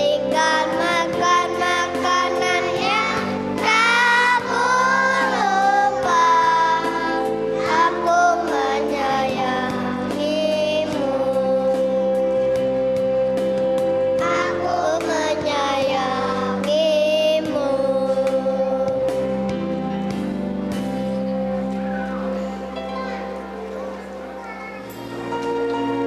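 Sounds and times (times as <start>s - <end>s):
children's choir singing: 0.0s - 12.6s, 14.0s - 19.4s
musical accompaniment: 0.0s - 26.0s.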